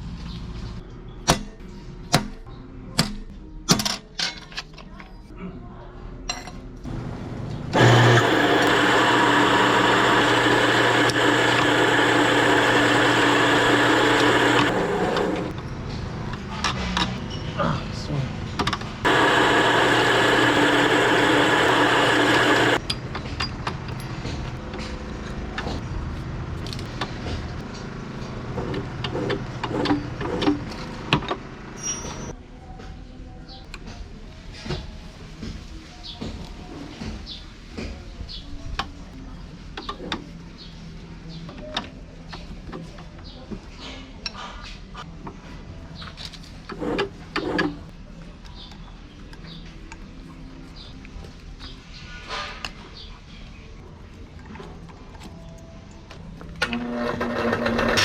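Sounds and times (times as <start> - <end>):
electric motor running: 7.7 - 15.5, 19.0 - 22.8.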